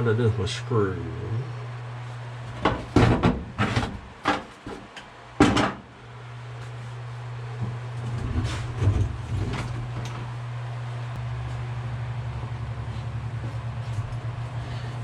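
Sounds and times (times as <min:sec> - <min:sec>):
steady low hum: 0:00.0 - 0:15.0
objects knocking and clattering: 0:02.6 - 0:04.8.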